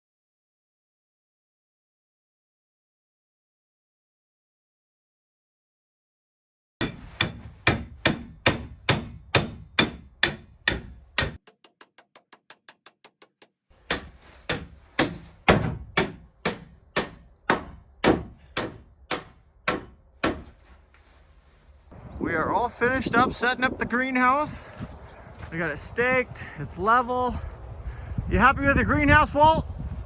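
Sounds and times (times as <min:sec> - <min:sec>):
hammer blows on stakes: 0:06.8 - 0:20.8.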